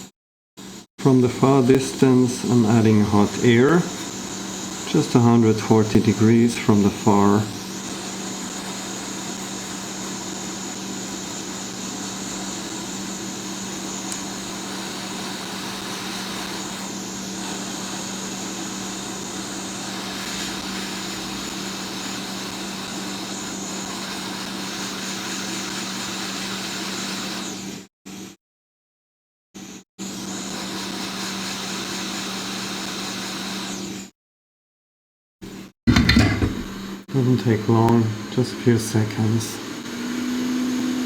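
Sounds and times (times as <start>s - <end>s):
hot air blower hiss: 0.7s - 27.7s, 30.2s - 33.8s, 35.9s - 41.0s
motor hum: 35.9s - 37.0s.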